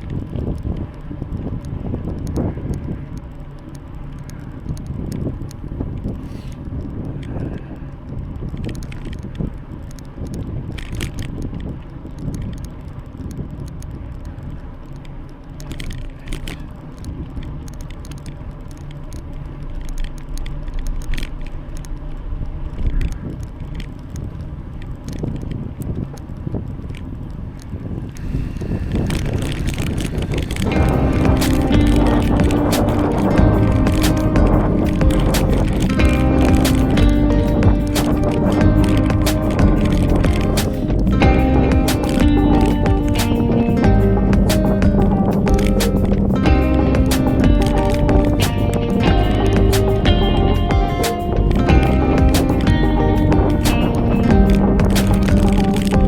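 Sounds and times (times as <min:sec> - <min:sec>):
bike clicks and rattles: 0:00.0 - 0:56.0
tyres rumbling on road: 0:27.1 - 0:56.0.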